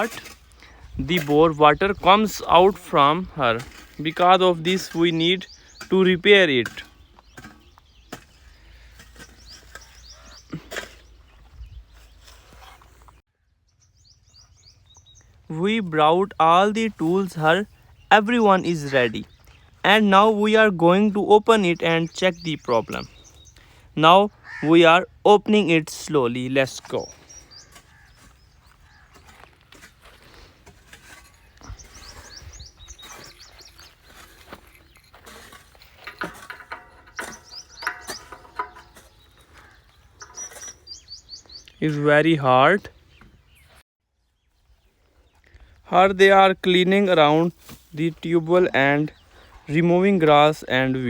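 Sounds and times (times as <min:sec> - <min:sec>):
small birds chirping: 0:00.0 - 0:51.0
knocks and rustling handling noise: 0:26.4 - 0:42.0.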